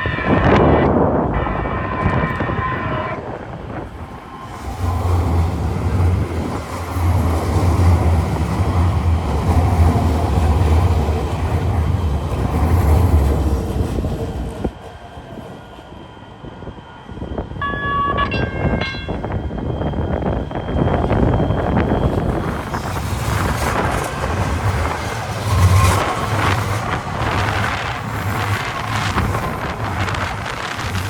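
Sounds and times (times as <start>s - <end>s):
light-rail train humming: 0.0s - 31.0s
pitched warning signals: 17.6s - 22.3s.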